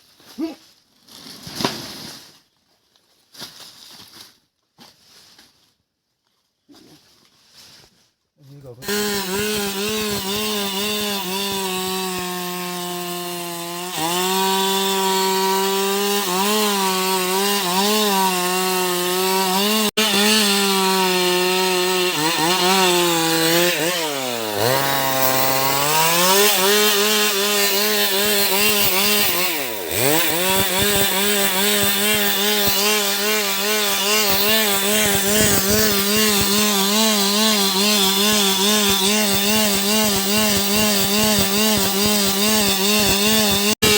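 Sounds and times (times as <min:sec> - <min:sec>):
chainsaw cutting wood: 0:08.8 - 0:43.9.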